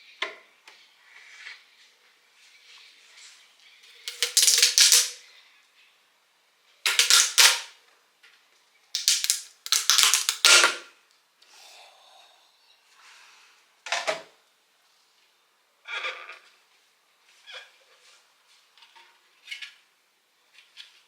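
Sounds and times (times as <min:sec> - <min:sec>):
hard objects clicking and rattling: 0:04.1 - 0:05.2, 0:06.9 - 0:07.7, 0:09.0 - 0:10.8.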